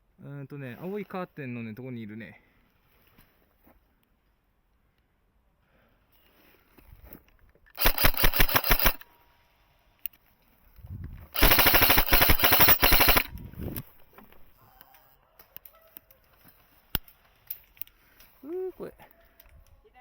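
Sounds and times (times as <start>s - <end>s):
airsoft gun firing full auto: 7.8s - 9.2s, 11.4s - 13.4s.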